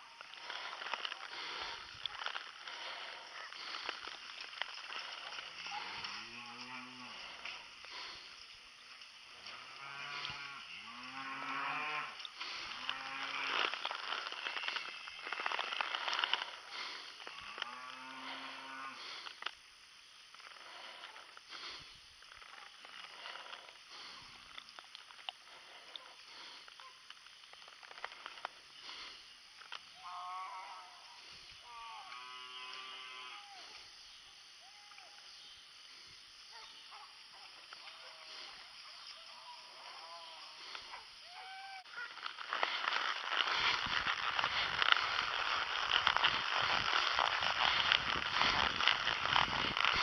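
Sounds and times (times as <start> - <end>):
rustling hiss: 0.0 - 50.0
cows mooing: 4.8 - 8.2, 9.4 - 14.8, 17.3 - 19.2.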